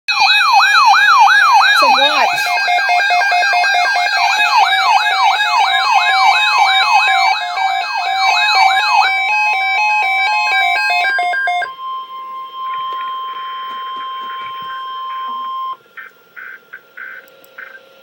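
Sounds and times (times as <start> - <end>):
hi-lo siren tone: 0.1 - 15.8
yelp siren: 0.1 - 16.5
steady single siren tone: 0.5 - 15.8.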